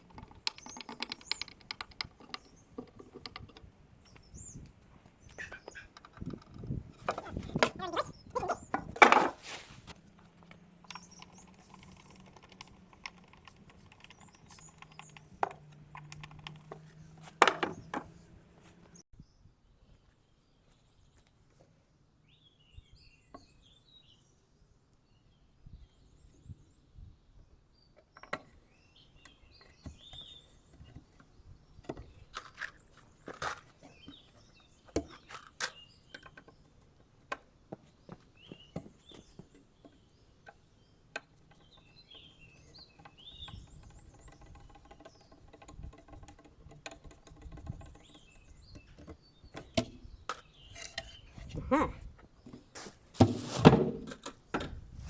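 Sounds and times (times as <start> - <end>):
faint bird chirps: 0.0 - 9.0
wooden crate being taken apart: 52.5 - 54.8.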